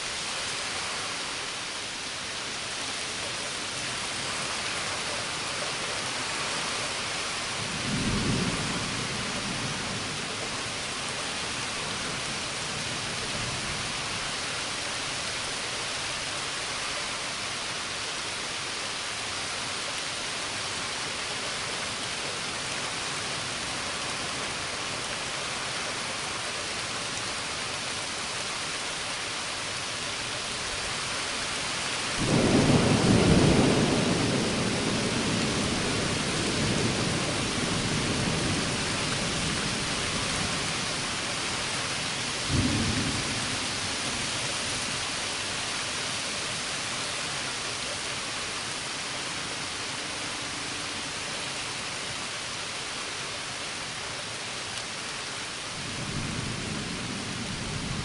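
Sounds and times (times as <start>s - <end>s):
rain hissing: 0.0s - 58.0s
thunderclap rumbling: 32.1s - 39.7s.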